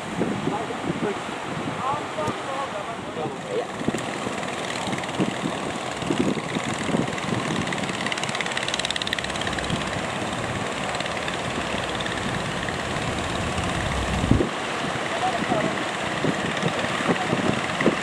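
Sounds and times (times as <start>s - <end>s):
surf rushing: 0.0s - 18.0s
wind: 0.0s - 18.0s
boat engine running: 1.8s - 18.0s.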